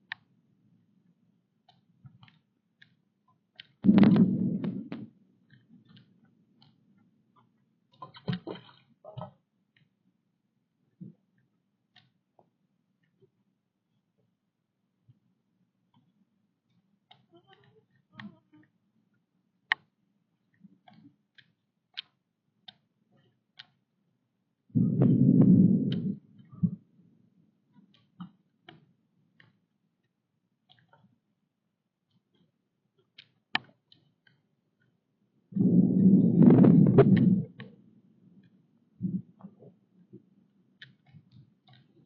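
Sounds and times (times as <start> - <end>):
faint low hum: 3.0 - 11.9, 24.3 - 27.9, 35.2 - 40.8
low rumbling thump: 3.8 - 5.1, 24.8 - 26.8, 35.6 - 37.5.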